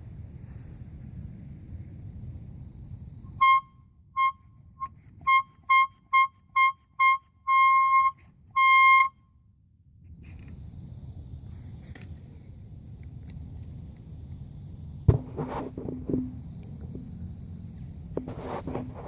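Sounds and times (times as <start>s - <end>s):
air horn blasts: 3.3s - 9.2s.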